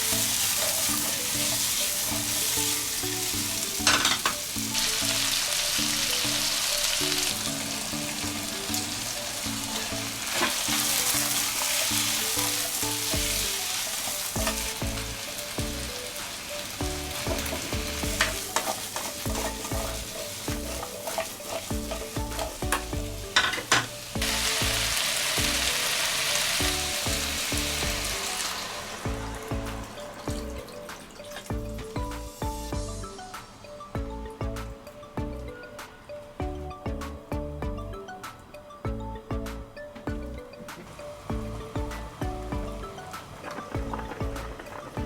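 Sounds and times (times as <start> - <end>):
utensil stirring: 0.0 - 4.6, 5.3 - 31.6
food sizzling in frying pan: 0.0 - 36.4, 40.6 - 45.0
background music: 0.0 - 45.0.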